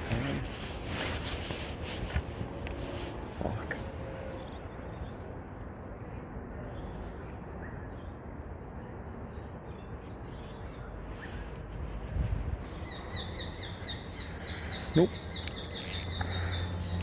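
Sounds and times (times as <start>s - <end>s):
low outdoor rumble: 0.0s - 8.5s.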